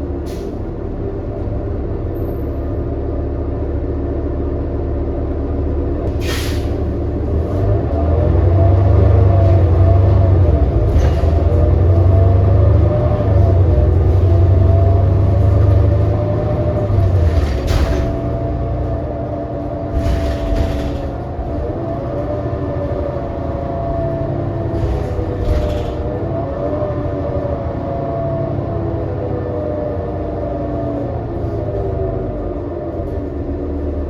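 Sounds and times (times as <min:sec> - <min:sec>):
bus engine rumble: 0:00.0 - 0:34.0
short air hisses: 0:06.2 - 0:06.8.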